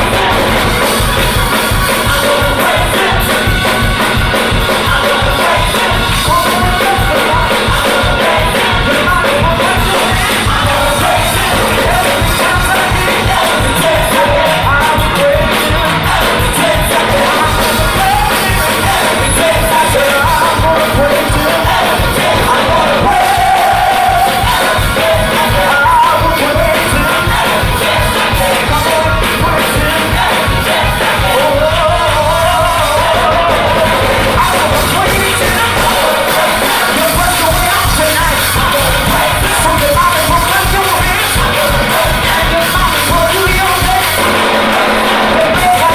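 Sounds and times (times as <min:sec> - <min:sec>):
band with drums: 0:00.0 - 0:45.9
crowd shouting and cheering: 0:00.0 - 0:45.9
gospel choir singing: 0:00.0 - 0:45.9.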